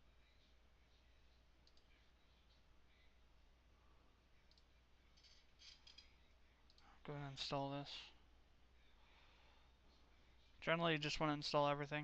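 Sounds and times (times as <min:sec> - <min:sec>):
computer mouse clicks: 0:01.6 - 0:01.9, 0:04.4 - 0:06.9.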